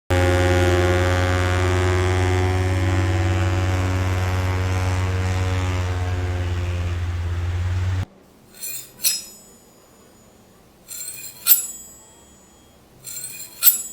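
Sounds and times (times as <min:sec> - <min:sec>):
loud low drone: 0:00.2 - 0:08.0.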